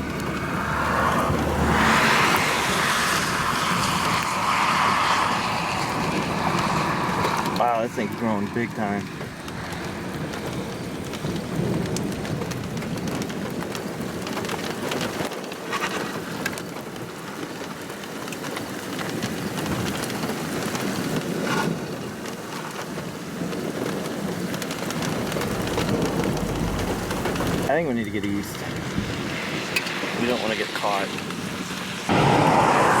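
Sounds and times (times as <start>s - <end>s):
low rumble: 0.0s - 3.9s, 24.6s - 29.7s
heavy rain hissing: 23.0s - 33.0s.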